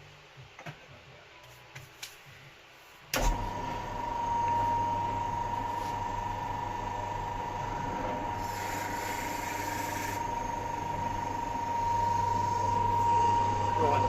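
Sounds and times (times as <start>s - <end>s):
drill press motor running: 6.3s - 14.0s.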